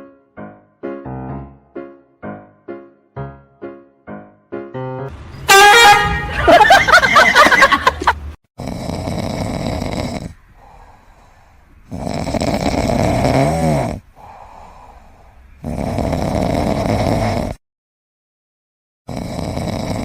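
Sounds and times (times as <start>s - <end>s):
loud snoring: 8.6s - 10.8s, 11.9s - 14.8s, 15.6s - 17.6s, 19.1s - 20.0s
quiet breathing: 8.6s - 16.8s.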